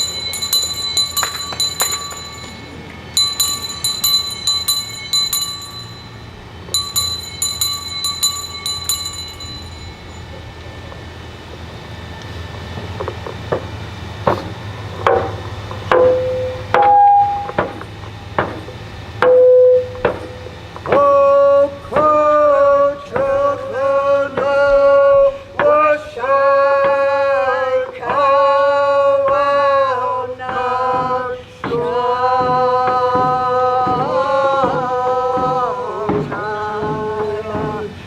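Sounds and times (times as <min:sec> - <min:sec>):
steady drumbeat: 0:00.0 - 0:10.2, 0:30.4 - 0:38.0
voices singing: 0:00.0 - 0:11.1, 0:19.2 - 0:38.0.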